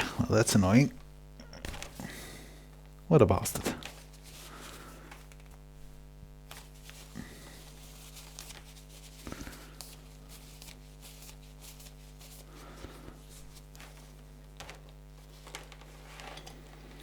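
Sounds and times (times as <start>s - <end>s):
electrical hum: 0.0s - 17.0s
clicks and rustles of cable handling: 1.0s - 2.1s, 3.6s - 7.2s, 12.8s - 17.0s.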